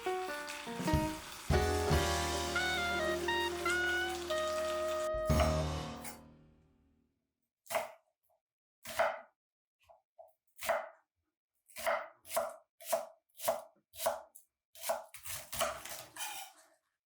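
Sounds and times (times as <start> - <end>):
knife chopping on cutting board: 7.7 - 8.0, 8.8 - 9.3, 10.6 - 11.0, 11.7 - 16.4.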